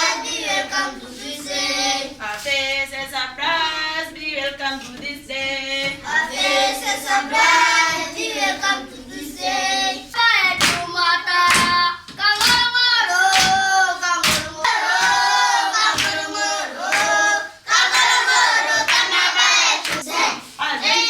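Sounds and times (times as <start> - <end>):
children singing: 0.0 - 2.2, 5.8 - 21.0
hand clapping: 10.5 - 17.2, 18.9 - 19.2, 19.8 - 20.1.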